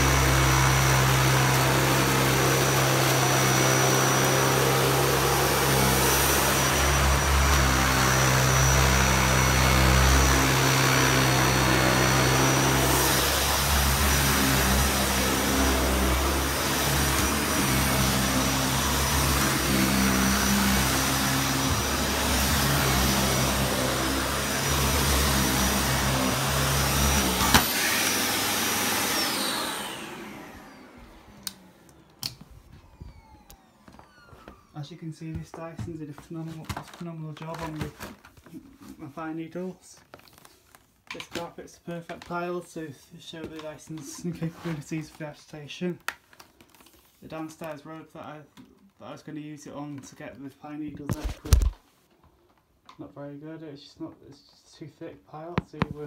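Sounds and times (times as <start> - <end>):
vacuum cleaner running on carpet: 0.0 - 34.7
motor spinning down whine: 27.1 - 34.7.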